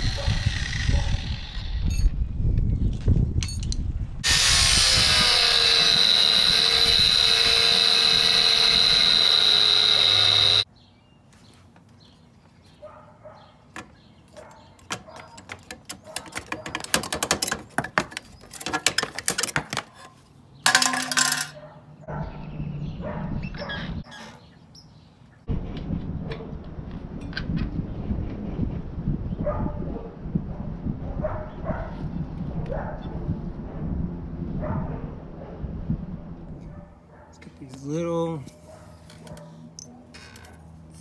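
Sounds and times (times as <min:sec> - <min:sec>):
power tool whining: 0:00.0 - 0:02.1, 0:04.2 - 0:10.7, 0:14.8 - 0:21.2
tools and metal parts clattering: 0:13.7 - 0:21.6, 0:38.4 - 0:41.0.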